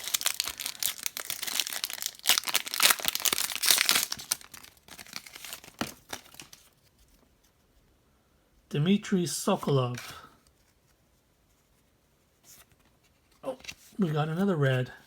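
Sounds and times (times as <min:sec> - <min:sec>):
foil wrapper tearing and crinkling: 0:00.0 - 0:06.7.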